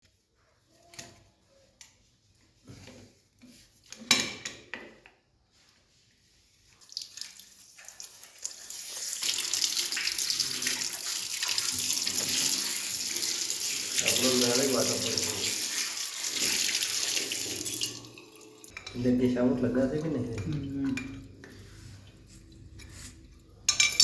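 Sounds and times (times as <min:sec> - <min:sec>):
water running from tap: 0:06.8 - 0:21.6.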